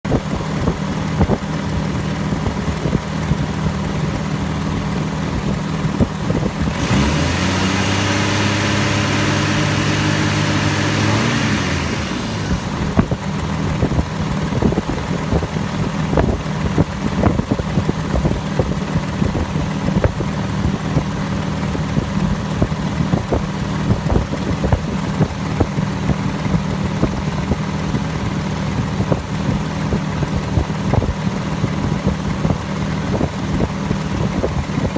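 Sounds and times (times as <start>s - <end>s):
car engine idling: 0.0s - 34.9s
engine revving with hiss: 5.4s - 14.0s.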